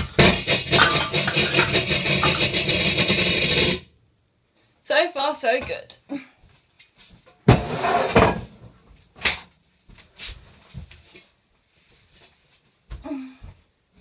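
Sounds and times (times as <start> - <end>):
rustling clatter: 0.0 - 3.8
knocks and clicks: 0.1 - 3.8.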